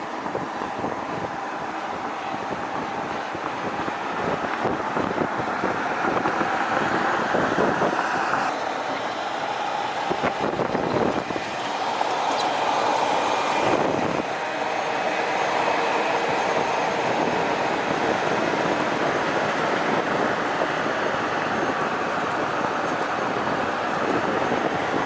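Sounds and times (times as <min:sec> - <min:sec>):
truck road and wind noise: 0:00.0 - 0:25.0.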